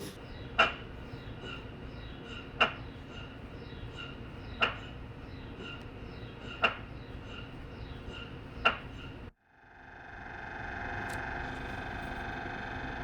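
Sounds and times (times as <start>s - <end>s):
mri scanner hum: 9.5s - 13.0s.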